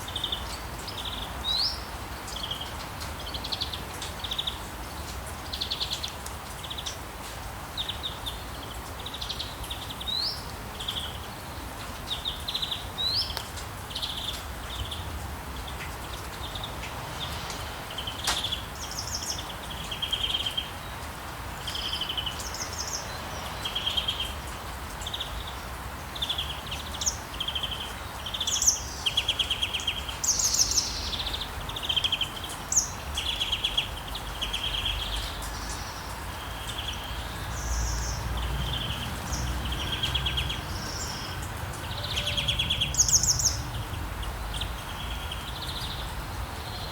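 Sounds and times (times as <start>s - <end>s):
rain hiss: 0.0s - 46.9s
songbirds chirping and singing: 7.8s - 46.9s
low town rumble: 13.6s - 26.2s, 34.1s - 46.9s.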